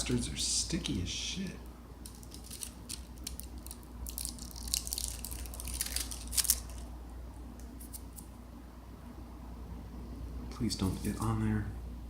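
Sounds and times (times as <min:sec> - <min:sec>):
foil and plastic crinkling: 0:02.1 - 0:06.9.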